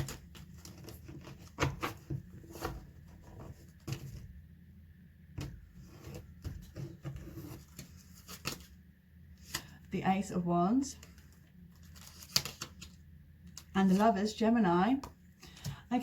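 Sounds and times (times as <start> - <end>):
cards being shuffled: 6.0 - 8.7, 11.0 - 14.2.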